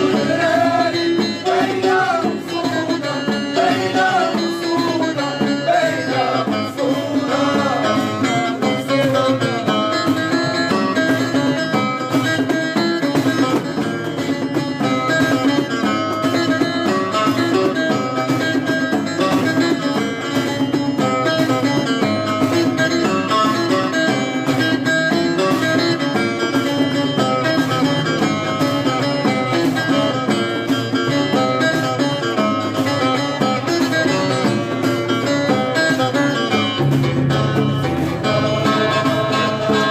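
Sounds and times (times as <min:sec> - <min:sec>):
plucked string instrument music: 0:00.0 - 0:39.9.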